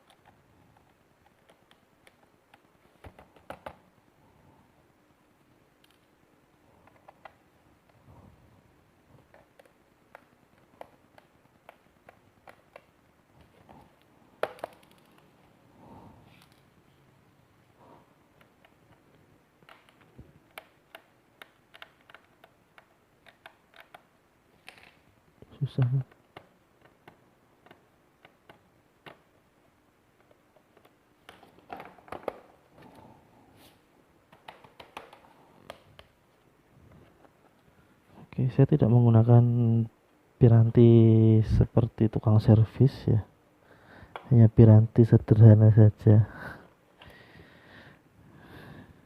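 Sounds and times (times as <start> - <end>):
clicks and taps on laptop case: 3.0 - 3.8, 14.4 - 15.0, 30.8 - 32.5, 34.3 - 36.1
sharp plastic snaps: 9.2 - 15.3, 18.3 - 25.1, 34.3 - 36.2
hand tools clicking on plastic: 18.4 - 25.0, 34.3 - 36.1.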